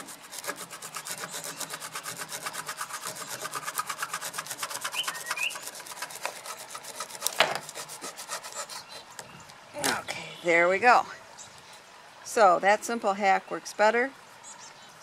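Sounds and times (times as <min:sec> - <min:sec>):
hand-sawing through wood: 0:00.0 - 0:09.2.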